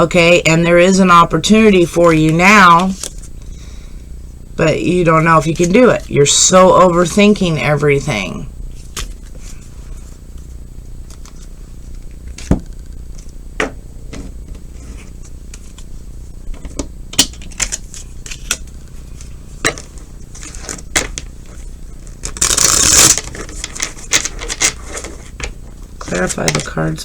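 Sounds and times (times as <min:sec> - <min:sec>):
cards shuffling: 0:02.0 - 0:03.3, 0:05.4 - 0:06.1, 0:08.7 - 0:10.4, 0:11.0 - 0:13.4, 0:16.5 - 0:26.8.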